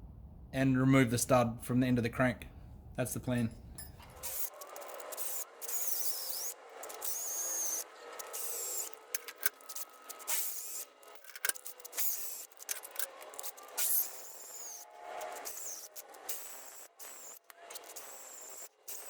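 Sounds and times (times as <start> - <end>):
electric drill whining: 3.8 - 19.0.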